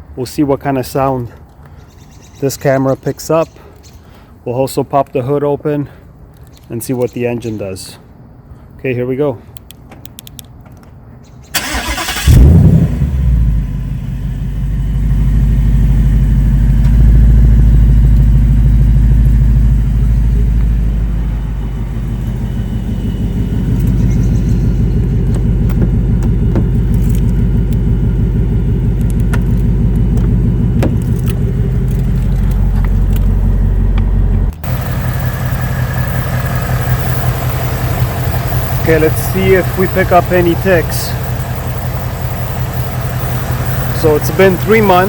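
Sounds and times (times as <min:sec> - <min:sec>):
engine cranking: 0:11.6 - 0:13.0, 0:19.7 - 0:45.0
car engine idling: 0:11.6 - 0:45.0.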